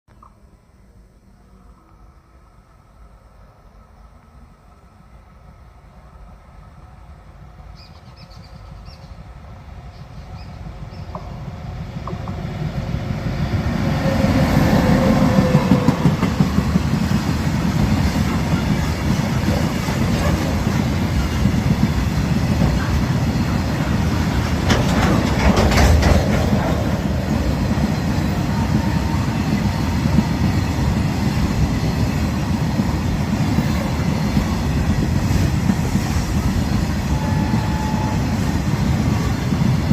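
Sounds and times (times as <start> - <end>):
train rumbling: 1.3 - 39.9
wheels clattering on rails: 14.9 - 36.8.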